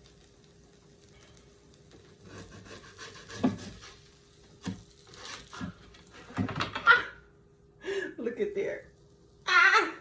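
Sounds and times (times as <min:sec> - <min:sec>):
spatula scraping a pan: 0:02.1 - 0:06.5.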